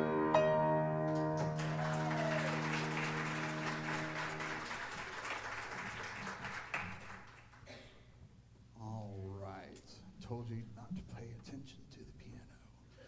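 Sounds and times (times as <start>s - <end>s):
piano chord ringing: 0.0s - 4.8s
congregation applauding: 0.9s - 7.7s.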